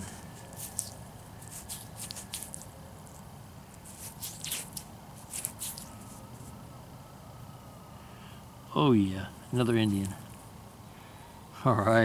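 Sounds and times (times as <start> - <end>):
fingers rubbing damp soil: 0.0 - 6.2.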